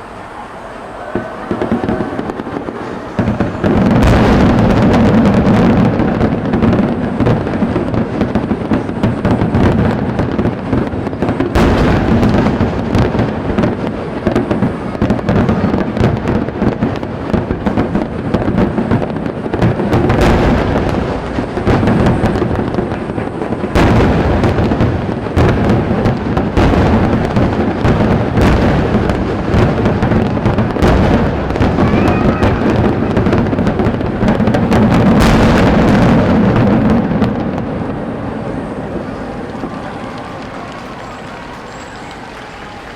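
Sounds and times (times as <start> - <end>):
rumbling echo: 0.0 - 18.8
fireworks bangs and crackles: 0.0 - 42.9
heavy firework booms: 0.4 - 42.9.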